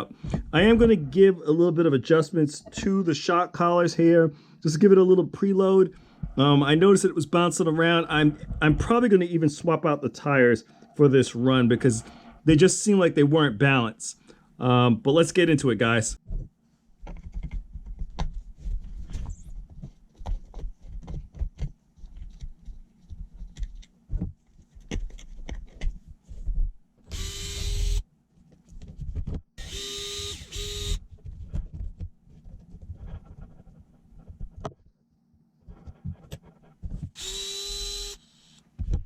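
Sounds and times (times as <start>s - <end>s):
small electric power driver: 27.1s - 28.0s, 29.6s - 31.1s, 37.2s - 38.7s.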